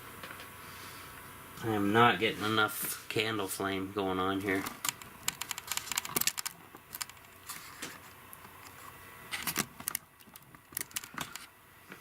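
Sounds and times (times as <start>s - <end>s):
small objects clicking and tapping: 4.8s - 11.5s.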